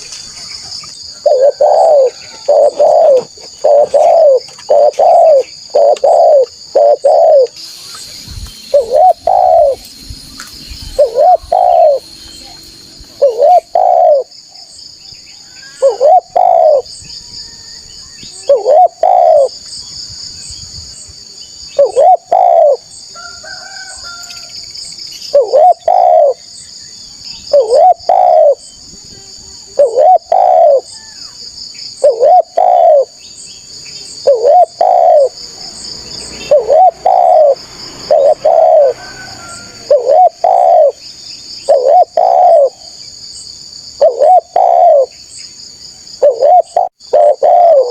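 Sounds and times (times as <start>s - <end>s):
dove cooing: 1.1s - 7.6s, 8.7s - 9.8s, 10.9s - 12.1s, 13.2s - 14.4s, 15.8s - 16.9s, 18.3s - 19.5s, 21.8s - 22.9s, 25.3s - 26.5s, 27.5s - 28.6s, 29.6s - 31.3s, 32.0s - 33.2s, 34.2s - 41.0s, 41.6s - 43.0s, 44.0s - 45.2s, 46.2s - 47.9s.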